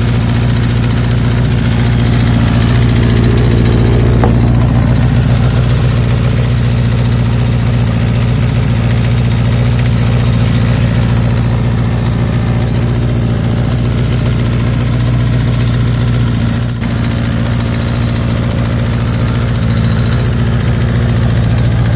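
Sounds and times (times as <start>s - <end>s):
motorcycle engine idling roughly: 0.0s - 21.9s.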